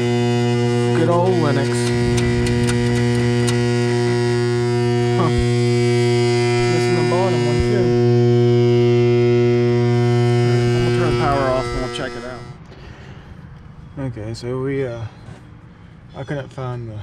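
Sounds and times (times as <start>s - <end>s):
electrical mains hum: 0.0s - 12.6s.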